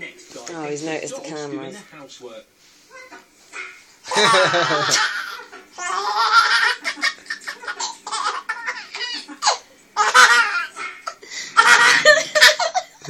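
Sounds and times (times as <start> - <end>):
parrot cackling laughter: 4.0 - 13.0.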